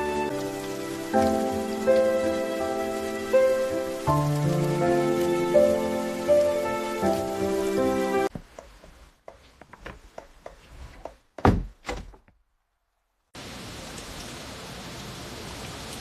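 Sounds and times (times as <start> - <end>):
steady rain: 0.0 - 10.6, 13.4 - 16.0
loud thumps: 11.3 - 12.3.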